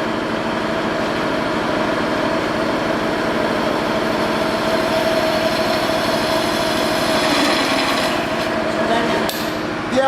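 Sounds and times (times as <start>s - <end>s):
drilling machine drilling: 4.2s - 8.6s.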